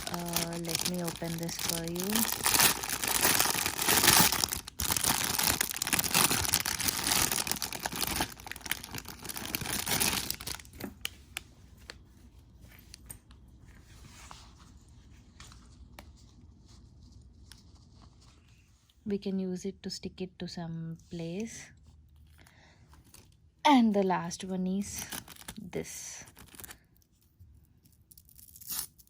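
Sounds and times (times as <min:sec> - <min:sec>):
plastic packaging tearing and crinkling: 0:00.0 - 0:11.0, 0:24.9 - 0:25.6, 0:26.2 - 0:26.8.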